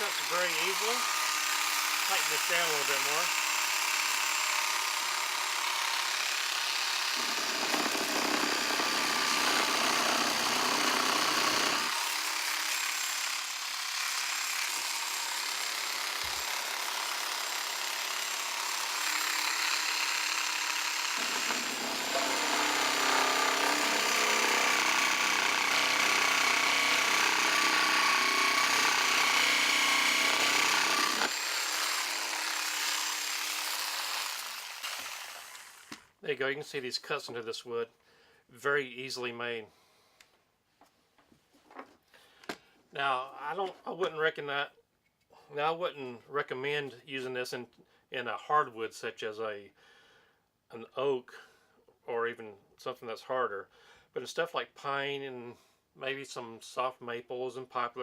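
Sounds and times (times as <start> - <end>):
rotary tool high whine: 0.0 - 36.0
jigsaw blade sawing wood: 0.0 - 36.1.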